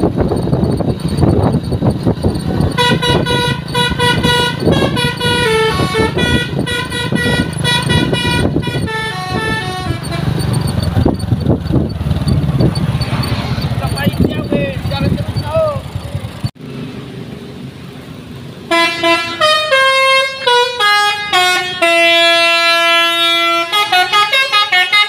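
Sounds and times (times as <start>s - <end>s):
bus horn playing a tune: 2.6s - 10.6s, 18.7s - 25.0s.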